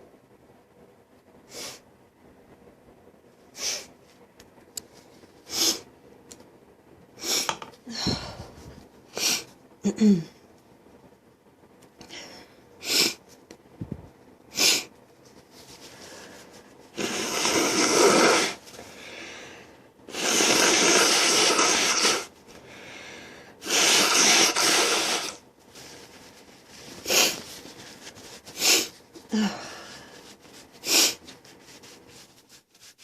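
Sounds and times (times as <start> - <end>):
noisy breaths through nose: 1.4 - 1.9, 3.5 - 4.0, 5.0 - 5.9, 12.1 - 13.3, 14.5 - 14.9, 15.5 - 32.3
person sniffling: 28.5 - 31.2.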